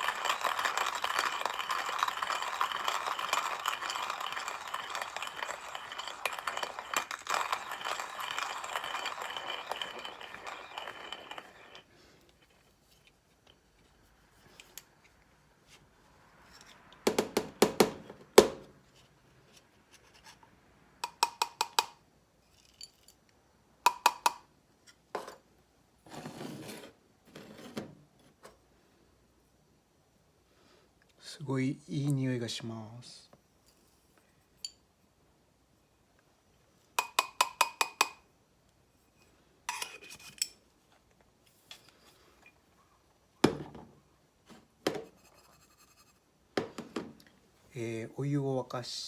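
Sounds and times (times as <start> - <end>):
coffee grinder grinding beans: 0.0 - 12.0
clinks taps and scrapes: 0.0 - 15.8, 16.4 - 17.0, 18.8 - 23.3, 39.0 - 42.7, 44.5 - 47.3.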